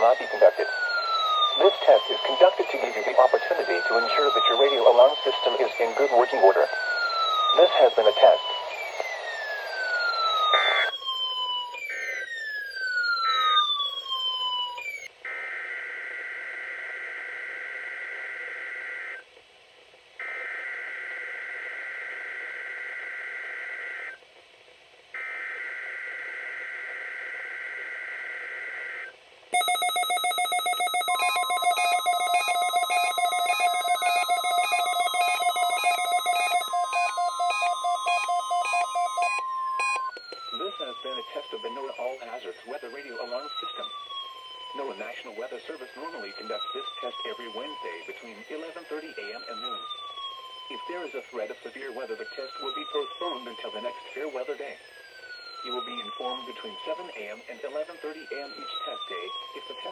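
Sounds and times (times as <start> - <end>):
long steady alert tones: 0.0 - 15.1, 29.6 - 59.9
fast-pulsing ringing alarm: 0.0 - 19.2, 25.2 - 59.9
falling electronic alert sweeps: 8.4 - 11.0, 29.6 - 40.2.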